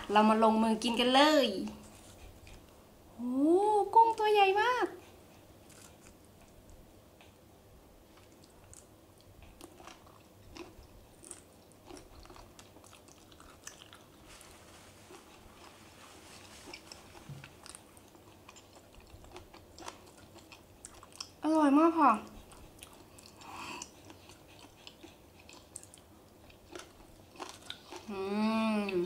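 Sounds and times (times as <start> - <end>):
chewing crunches: 5.6 - 7.4, 8.1 - 14.3, 16.6 - 21.4, 22.3 - 28.2.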